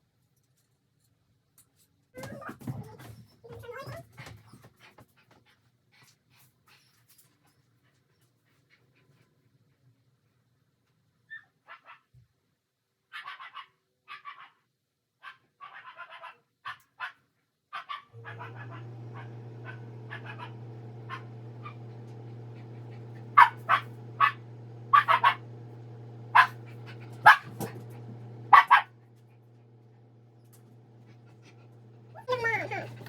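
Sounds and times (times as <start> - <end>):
dog barking: 13.1 - 14.6, 15.2 - 25.6, 26.2 - 29.0.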